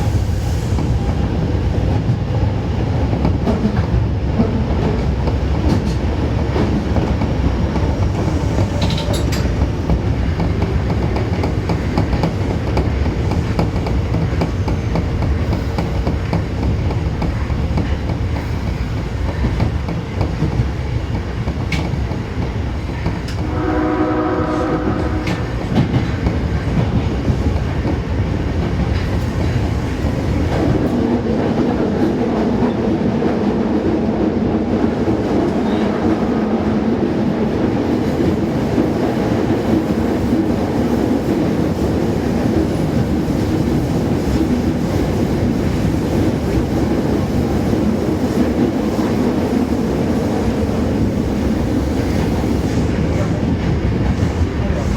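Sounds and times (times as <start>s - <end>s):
subway train running noise: 0.0s - 54.9s
train horn: 23.4s - 25.6s.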